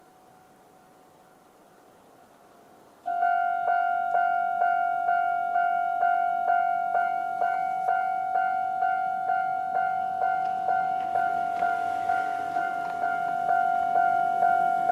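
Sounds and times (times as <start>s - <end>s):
level crossing warning bell dinging: 3.1s - 14.9s.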